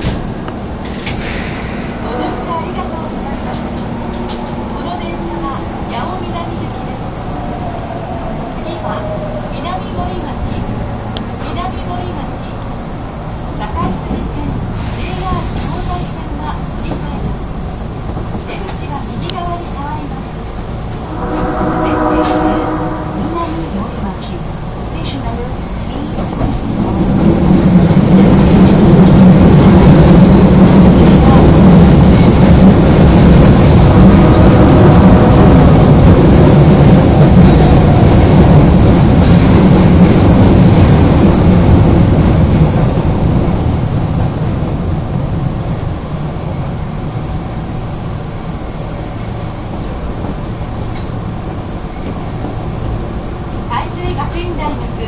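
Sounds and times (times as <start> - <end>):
train rumbling through tunnel: 0.0 - 55.0.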